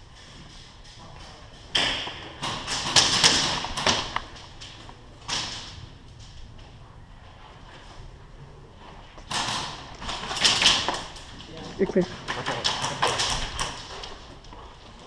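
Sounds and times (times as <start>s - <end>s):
airsoft guns firing: 1.7s - 4.4s, 9.3s - 11.3s.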